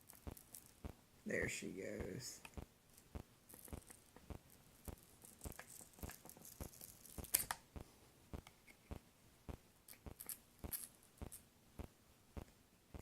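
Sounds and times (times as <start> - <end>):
adhesive overlay peeling crackle: 0.0 - 0.9, 2.9 - 7.6.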